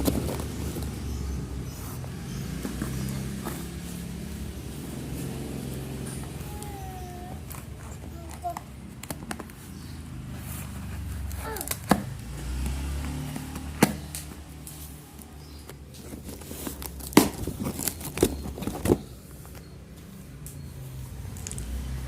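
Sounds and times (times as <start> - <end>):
cardboard clicks and knocks: 0.0 - 1.2, 11.3 - 19.7.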